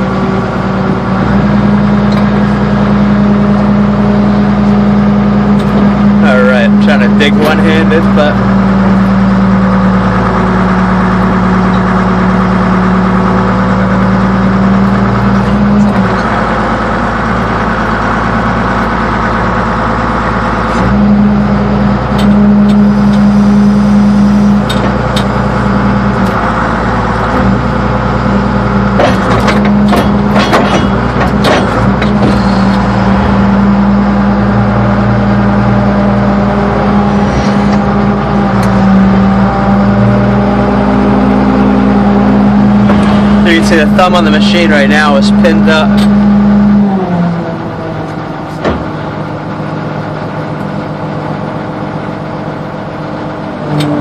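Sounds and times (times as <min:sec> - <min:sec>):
excavator engine running: 0:00.0 - 0:54.0
knocks and clanks: 0:28.9 - 0:33.7, 0:42.8 - 0:44.4, 0:48.1 - 0:49.2.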